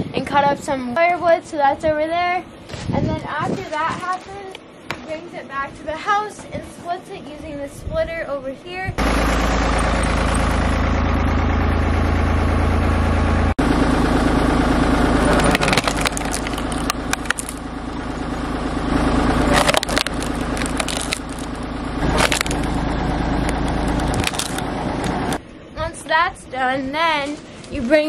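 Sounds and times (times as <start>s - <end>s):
log splitter engine running: 9.0s - 28.0s
firewood cracking and clattering: 15.2s - 17.7s, 19.5s - 25.4s.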